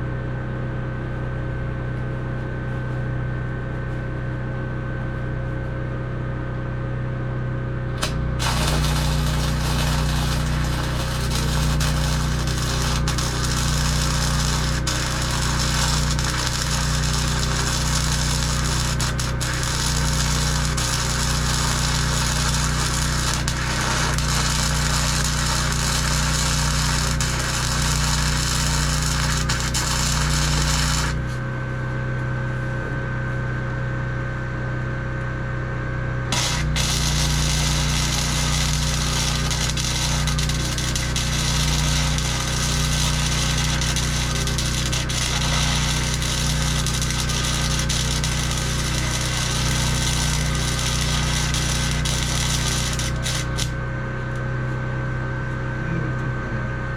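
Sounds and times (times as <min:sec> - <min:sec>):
low machine hum: 0:00.0 - 0:56.9
welding arc crackling: 0:08.0 - 0:31.4, 0:36.3 - 0:53.8.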